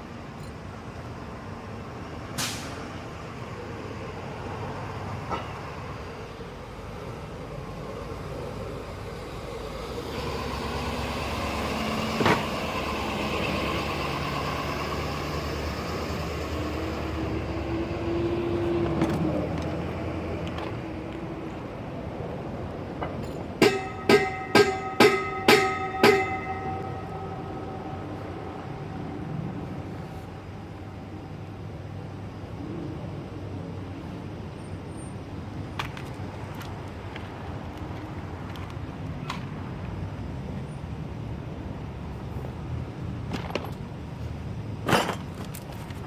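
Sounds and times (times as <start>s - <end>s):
vehicle passing: 8.3s - 20.9s
metal being struck: 23.6s - 28.1s.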